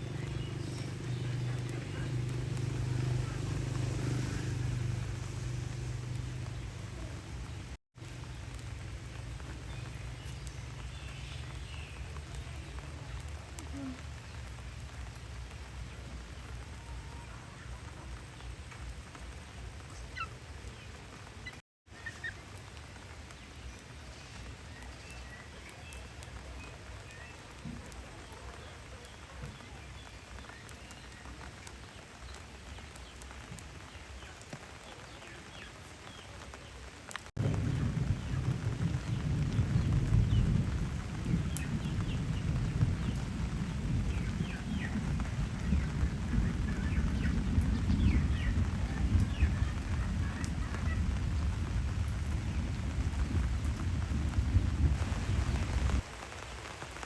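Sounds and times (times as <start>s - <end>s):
thunder rumble: 0.0s - 19.0s, 37.4s - 56.1s
steady rain falling: 0.0s - 57.0s.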